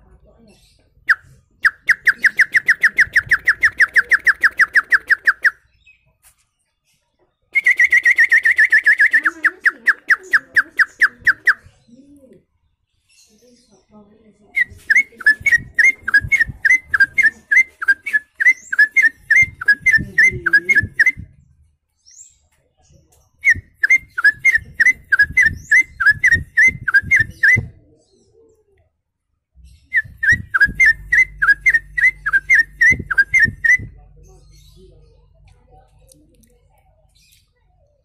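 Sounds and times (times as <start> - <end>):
man whistling birdsong imitation: 1.1 - 5.6, 7.6 - 11.6, 14.6 - 21.2, 23.4 - 27.7, 29.9 - 34.0.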